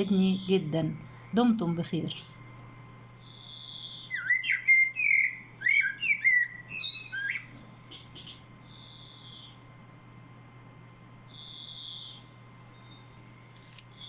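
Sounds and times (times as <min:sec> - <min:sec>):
songbird chirping and whistling: 0:03.1 - 0:07.6, 0:08.5 - 0:09.6, 0:11.2 - 0:13.2.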